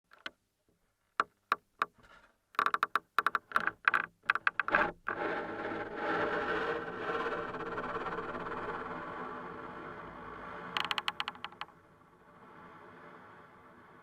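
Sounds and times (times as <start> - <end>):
creaking through contact microphone: 0.0 - 0.4, 1.2 - 9.2, 10.6 - 11.8
clicks: 10.8 - 11.7.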